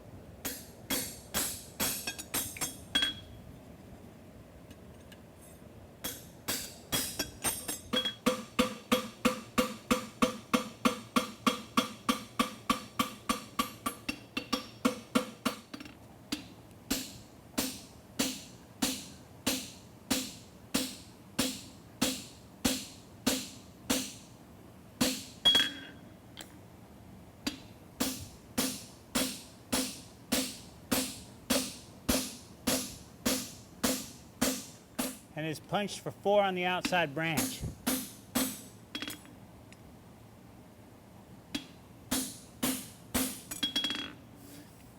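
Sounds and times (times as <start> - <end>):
hammer striking horseshoe on anvil: 0.4 - 3.3, 6.0 - 15.6, 41.6 - 44.1.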